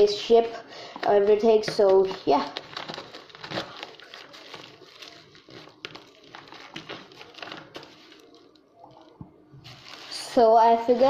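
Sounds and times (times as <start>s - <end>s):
plastic package rustling: 1.0s - 11.0s.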